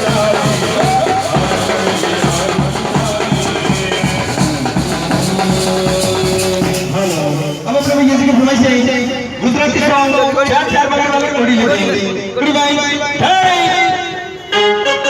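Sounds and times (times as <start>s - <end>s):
steady drum beat: 0.0s - 8.9s.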